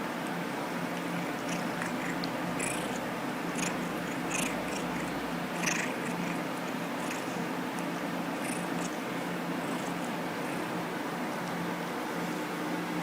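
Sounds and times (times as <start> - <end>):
low hum and hiss: 0.0 - 13.0.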